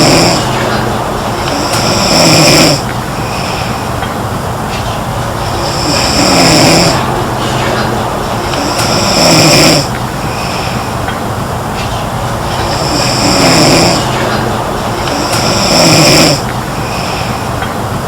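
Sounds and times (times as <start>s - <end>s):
girl snoring loudly: 0.0s - 0.5s, 1.5s - 2.8s, 5.7s - 7.0s, 8.6s - 9.9s, 12.8s - 14.0s, 15.1s - 16.4s
quiet breathing: 0.0s - 18.0s.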